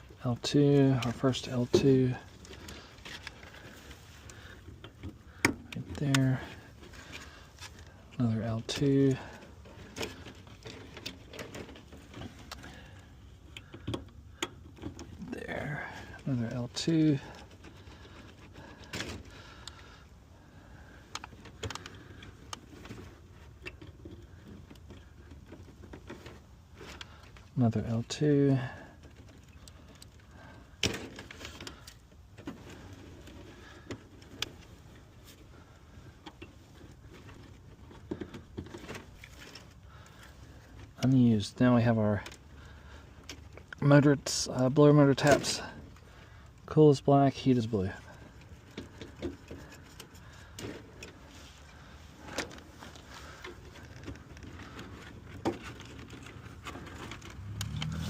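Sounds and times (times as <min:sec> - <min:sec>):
low steady hum: 0:00.0 - 0:58.0
wires and connectors clicking: 0:56.1 - 0:58.0.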